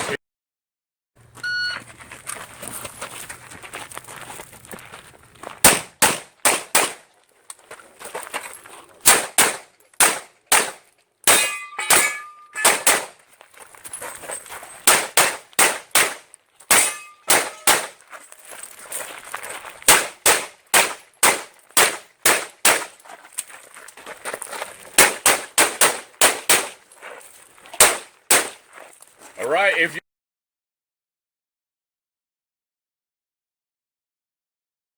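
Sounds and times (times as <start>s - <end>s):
pistol shots: 5.6s - 7.0s, 9.0s - 13.2s, 14.8s - 18.0s, 19.9s - 22.9s, 25.0s - 26.8s, 27.8s - 28.6s
steel target ringing: 11.3s - 13.1s, 16.7s - 18.0s.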